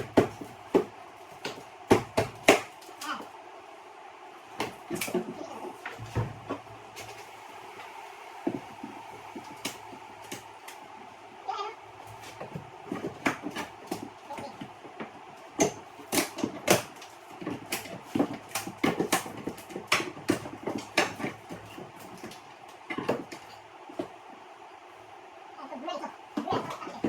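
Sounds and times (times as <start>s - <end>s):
wood knocking and clicking: 0.0s - 3.0s, 12.2s - 24.2s.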